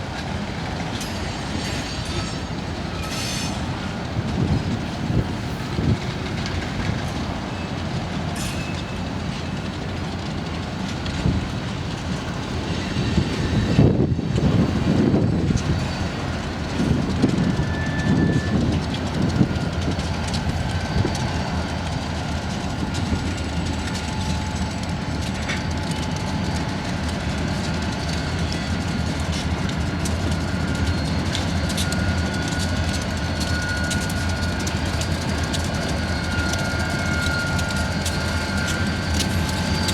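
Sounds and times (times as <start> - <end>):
diesel locomotive rumble: 0.0 - 39.9
train wheels clicking on rail joints: 0.0 - 39.9
faint wheel squeal: 1.0 - 3.8, 15.2 - 19.0, 30.4 - 39.9.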